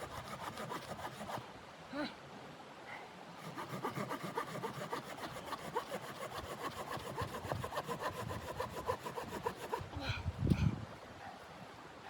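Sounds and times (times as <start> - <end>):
hand saw cutting wood: 0.0 - 1.4, 3.4 - 9.9.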